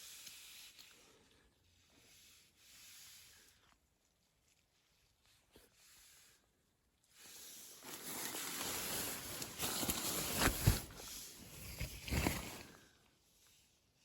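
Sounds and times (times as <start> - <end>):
rustling and scuffing: 7.8 - 12.8.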